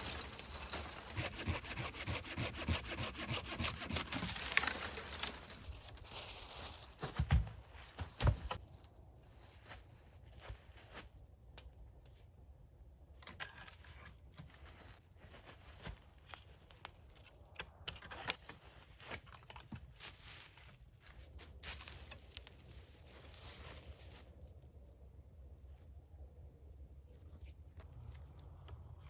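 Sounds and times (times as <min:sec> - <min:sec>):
wood clicking and rustling: 0:03.6 - 0:06.0.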